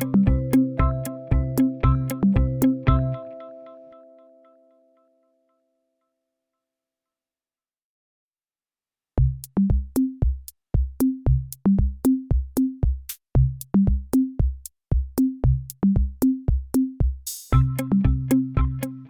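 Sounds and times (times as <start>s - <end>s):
drum machine beat: 0.0s - 3.2s, 9.2s - 19.0s.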